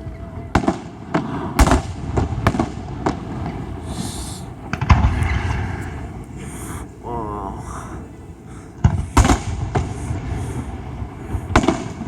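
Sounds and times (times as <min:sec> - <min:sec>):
fireworks bangs: 0:00.0 - 0:06.3, 0:08.8 - 0:12.0
brief hiss: 0:03.8 - 0:04.5.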